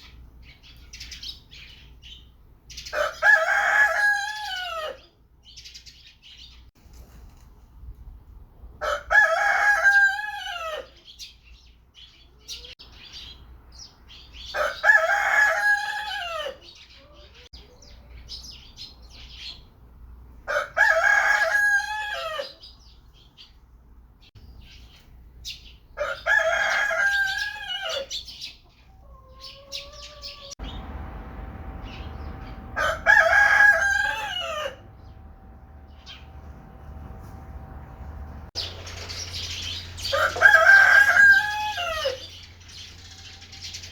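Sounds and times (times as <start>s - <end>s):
faint chicken chirps and clucks: 0.0s - 6.6s, 8.8s - 19.8s, 20.4s - 23.6s, 24.3s - 30.8s, 38.6s - 43.9s
rooster crowing: 3.0s - 5.0s, 8.8s - 10.9s, 14.6s - 16.6s, 20.5s - 22.6s, 26.0s - 28.1s, 29.0s - 38.5s, 40.0s - 42.4s
steady low hum: 30.6s - 40.2s.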